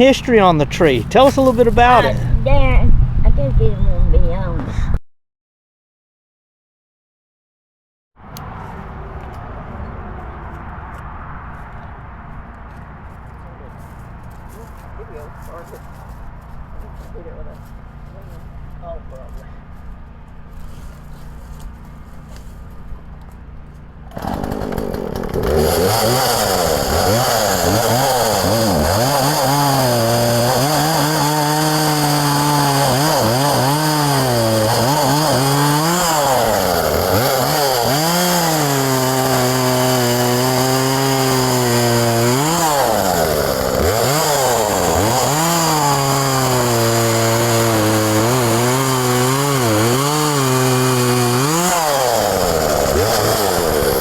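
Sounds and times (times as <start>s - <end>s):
chainsaw engine revving: 0.0s - 2.3s, 24.1s - 54.0s.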